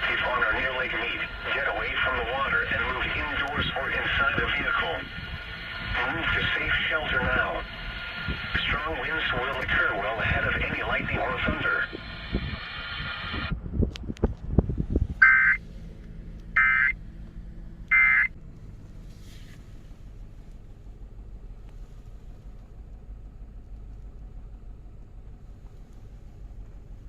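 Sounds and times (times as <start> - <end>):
steady low rumble: 0.0 - 27.0
raspy data bursts: 15.2 - 15.6.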